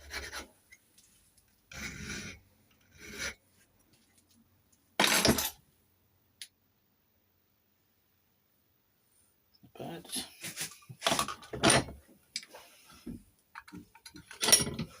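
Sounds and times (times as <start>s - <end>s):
file rasping on metal key: 0.0s - 0.5s, 1.7s - 3.4s.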